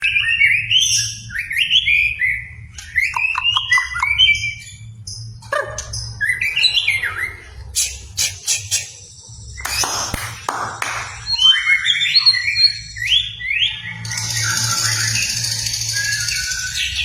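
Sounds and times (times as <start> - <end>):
bird singing whistled phrases: 11.2 - 17.0.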